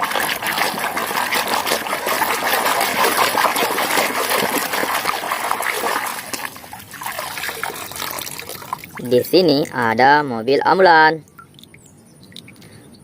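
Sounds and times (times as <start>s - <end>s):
water gushing and splashing: 0.0s - 10.0s.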